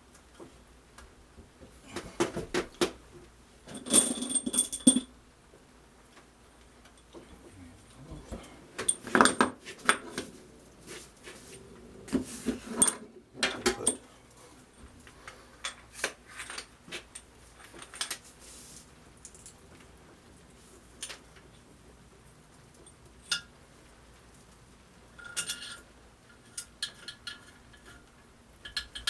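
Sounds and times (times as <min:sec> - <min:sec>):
metal tools clinking and clanking: 0:03.7 - 0:05.1, 0:08.2 - 0:10.6, 0:12.4 - 0:14.1.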